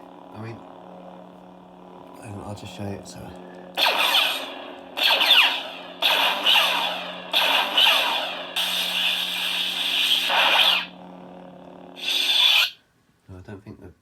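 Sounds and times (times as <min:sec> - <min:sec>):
lightsaber blade hum: 0:00.0 - 0:12.8
blaster deflect and swing effects: 0:03.8 - 0:11.0, 0:12.0 - 0:12.8.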